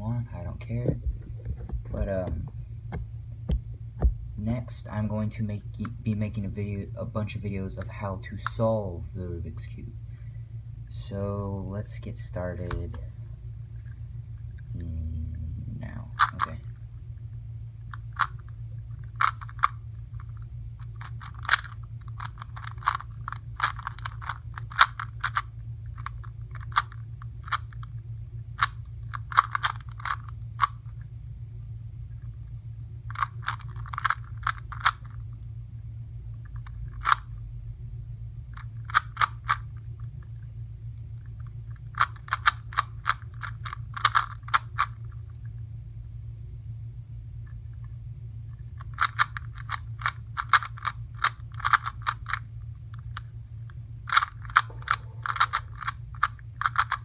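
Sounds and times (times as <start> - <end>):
steady low hum: 0.0 - 57.0
puzzle cube plastic clicks: 16.2 - 16.6, 17.9 - 28.0, 28.6 - 31.1, 33.1 - 35.3, 36.4 - 37.3, 38.5 - 40.5, 41.2 - 45.2, 48.5 - 53.3, 54.0 - 57.0.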